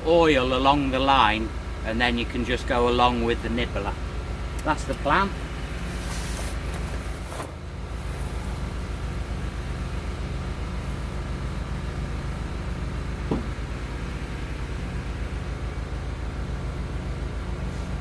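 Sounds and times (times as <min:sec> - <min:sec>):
engine rumbling: 0:00.0 - 0:18.0.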